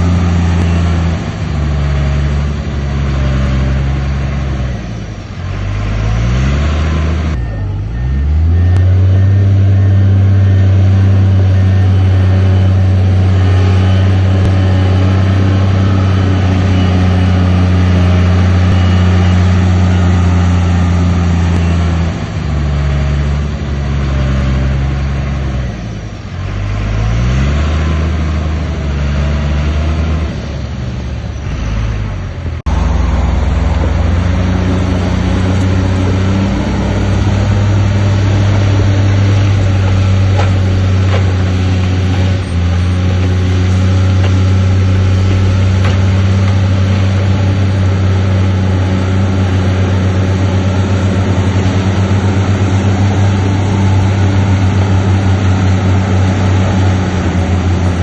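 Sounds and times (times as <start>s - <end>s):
heavy diesel engine under load: 0.0s - 58.0s.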